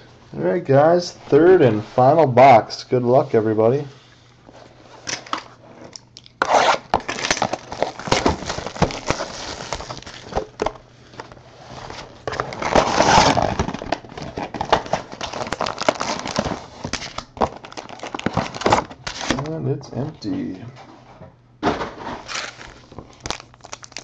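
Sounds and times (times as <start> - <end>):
plastic wrapping crinkling and tearing: 6.2 - 19.5, 22.2 - 24.0.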